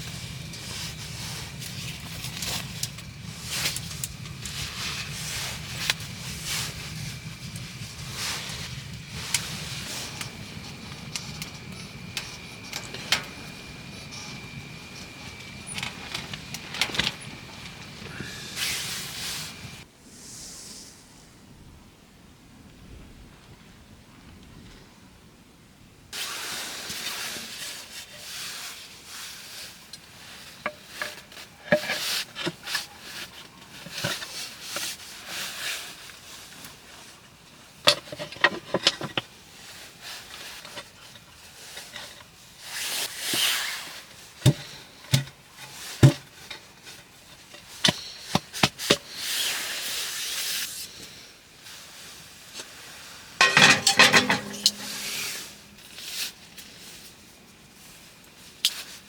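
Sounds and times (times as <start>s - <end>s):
food sizzling: 53.4s - 55.9s
pots and utensils clinking: 53.4s - 56.1s.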